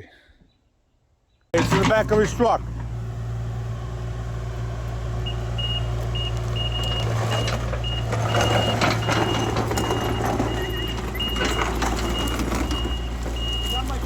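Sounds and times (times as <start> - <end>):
crunching and scraping ground: 1.6 - 14.0
diesel engine running: 1.6 - 14.0
backup alarm beeping: 5.2 - 14.0.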